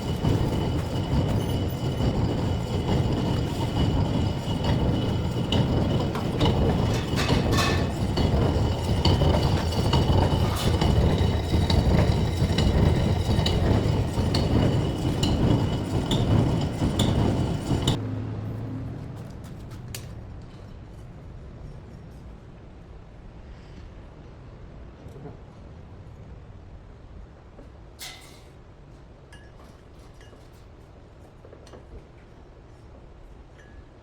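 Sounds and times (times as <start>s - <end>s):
metal lathe running: 0.0s - 18.0s.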